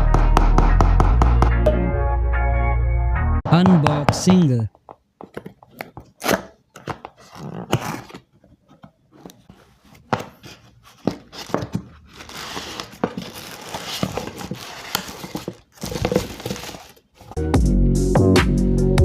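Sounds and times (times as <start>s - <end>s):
packaging knocks and rustles: 4.8s - 17.4s
wrapping crinkling: 10.4s - 17.4s.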